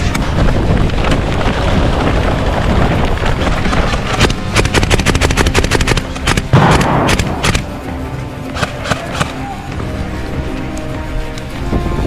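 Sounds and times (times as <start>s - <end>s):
airsoft rifle full-auto burst: 4.2s - 7.6s.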